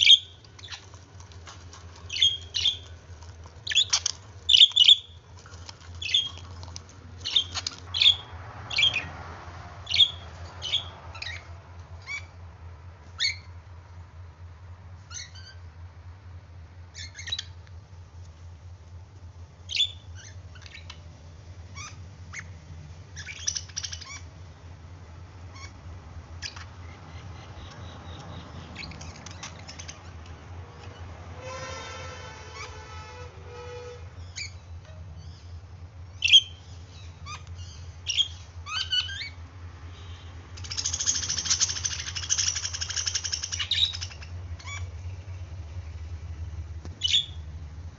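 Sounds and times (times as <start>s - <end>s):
budgerigars chirping and squawking: 0.0s - 1.4s, 2.0s - 2.9s, 3.6s - 5.2s, 5.9s - 6.5s, 7.2s - 9.1s, 9.8s - 12.3s, 13.2s - 13.5s, 15.1s - 15.6s, 16.9s - 17.6s, 19.7s - 21.0s, 21.7s - 24.3s, 25.5s - 25.8s, 26.4s - 30.3s, 34.2s - 35.5s, 36.1s - 39.4s, 40.6s - 45.2s, 47.0s - 47.4s
steady low hum: 0.0s - 47.9s.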